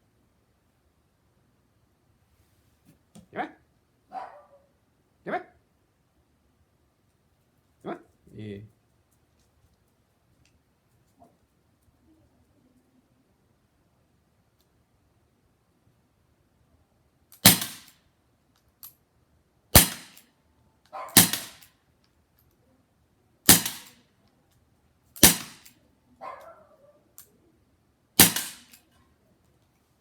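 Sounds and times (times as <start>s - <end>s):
air revolver shots cracking: 17.4s - 17.9s, 19.8s - 20.2s, 21.1s - 21.7s, 23.5s - 24.0s, 25.2s - 25.7s, 28.2s - 28.8s.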